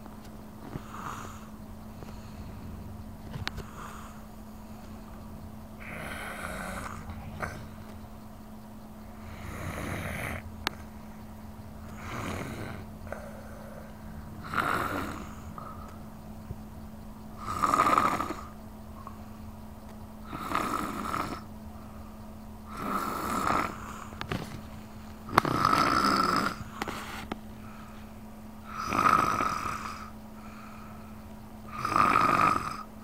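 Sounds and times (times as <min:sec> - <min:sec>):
baby snoring: 0:00.7 - 0:02.3, 0:05.8 - 0:07.8, 0:09.2 - 0:10.4, 0:11.9 - 0:16.0, 0:17.4 - 0:18.6, 0:20.2 - 0:21.5, 0:22.7 - 0:24.4, 0:25.3 - 0:27.3, 0:28.6 - 0:30.1, 0:31.7 - 0:32.9.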